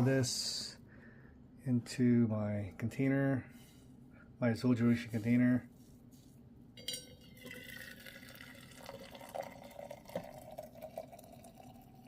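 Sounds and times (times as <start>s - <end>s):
clink and short ringing: 6.8s - 7.4s
coffee pouring into container: 6.8s - 12.0s.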